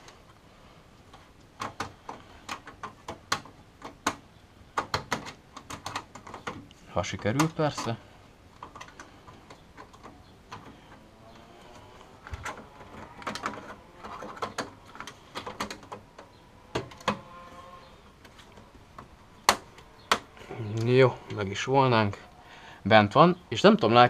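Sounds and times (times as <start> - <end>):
metal clicks scrapes and rattles: 8.6 - 17.2.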